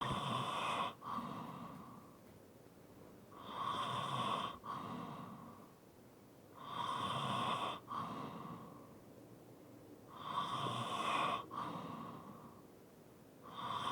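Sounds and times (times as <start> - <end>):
light snoring: 0.0 - 2.2, 3.3 - 5.7, 6.6 - 8.9, 10.1 - 12.6, 13.4 - 13.9
person breathing heavily asleep: 0.0 - 2.2, 3.3 - 5.8, 6.6 - 9.0, 10.1 - 12.7, 13.4 - 13.9.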